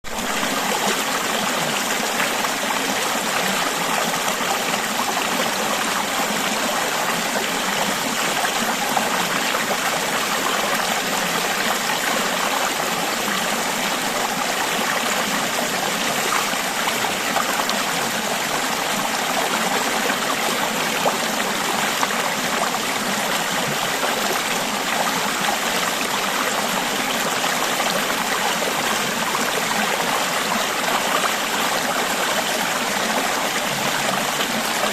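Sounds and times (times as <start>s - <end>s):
stream babbling over rocks: 0.1s - 34.9s.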